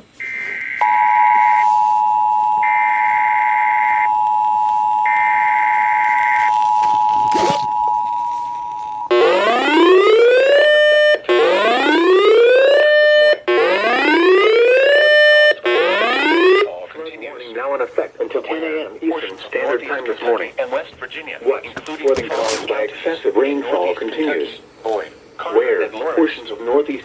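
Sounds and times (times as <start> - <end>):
two-tone attention signal: 0.2 - 10.0.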